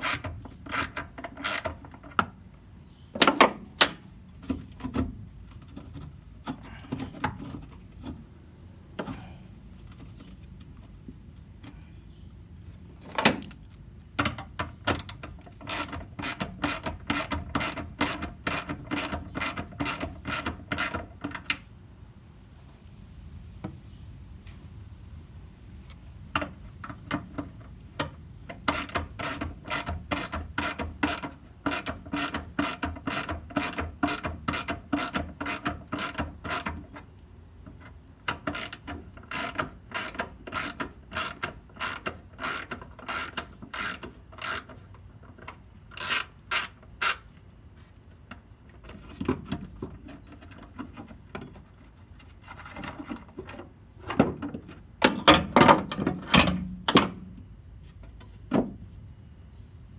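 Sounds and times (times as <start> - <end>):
scraping and handling noises: 3.2 - 11.9, 25.9 - 59.6
socket ratchet clicking: 14.9 - 21.5, 28.6 - 36.7, 38.3 - 44.8, 46.0 - 47.2.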